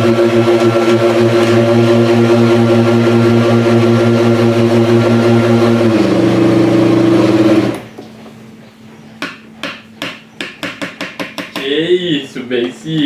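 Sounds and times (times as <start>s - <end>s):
blender motor running: 0.0s - 7.9s.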